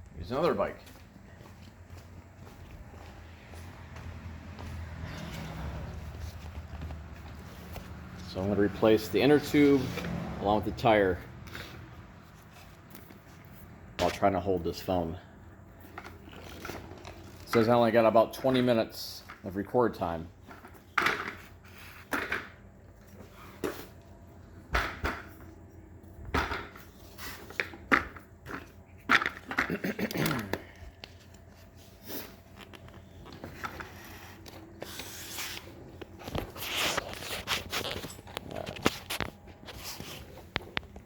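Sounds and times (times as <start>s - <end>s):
hands and tools handling bicycle parts: 5.0s - 10.2s, 15.7s - 19.6s, 20.4s - 41.0s.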